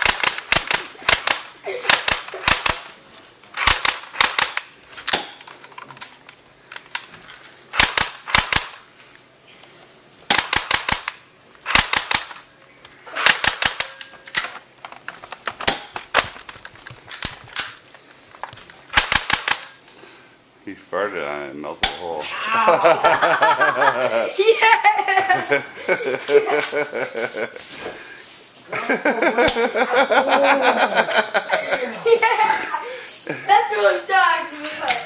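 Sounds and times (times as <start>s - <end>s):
airsoft gun firing: 0.0s - 3.0s, 3.6s - 5.4s, 7.7s - 8.9s, 10.3s - 12.5s, 13.1s - 14.5s, 15.6s - 16.4s, 18.9s - 19.8s.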